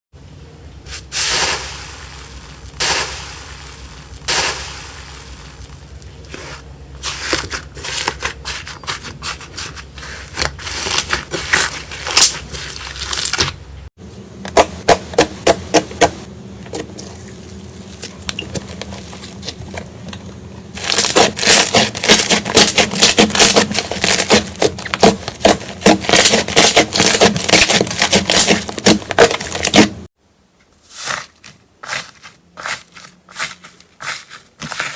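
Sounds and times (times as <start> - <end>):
slime crackling and popping: 10.8 - 13.5, 20.8 - 30.0.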